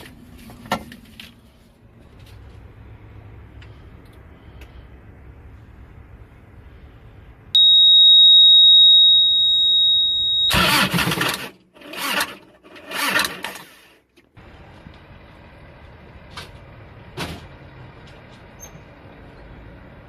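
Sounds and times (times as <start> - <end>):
high-pitched beep: 7.6 - 10.9
diesel engine cranking: 10.5 - 20.0.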